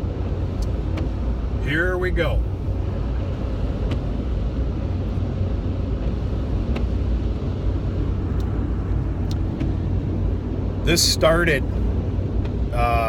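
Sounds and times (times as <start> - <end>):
road and engine noise: 0.0 - 13.0.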